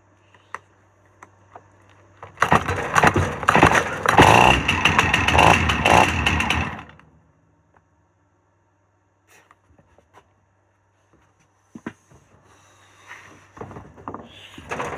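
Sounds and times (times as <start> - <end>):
two-stroke chainsaw running: 2.4 - 7.0.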